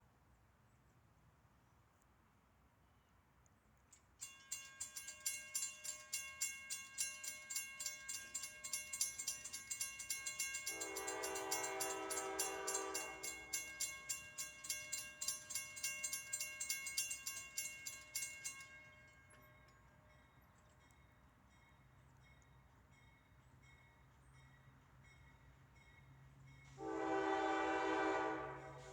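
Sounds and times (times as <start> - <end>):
crossing bell ringing: 4.2 - 28.9
locomotive horn blast: 10.8 - 13.4, 26.8 - 28.9.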